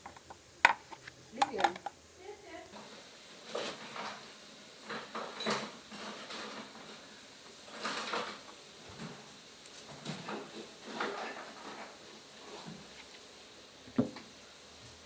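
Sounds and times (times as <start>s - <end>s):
hard parts scraping and knocking: 3.4s - 12.9s.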